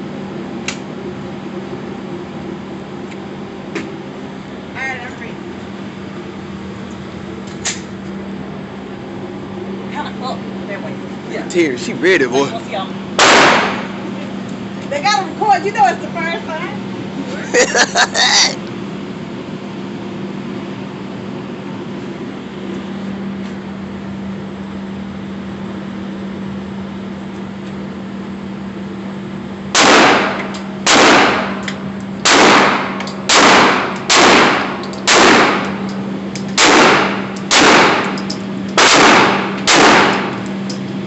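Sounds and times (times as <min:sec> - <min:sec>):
steady hum: 0:00.0 - 0:41.0
gunshots with ringing tail: 0:13.2 - 0:14.0, 0:29.7 - 0:31.6, 0:32.2 - 0:35.8, 0:36.6 - 0:38.2, 0:38.8 - 0:40.4.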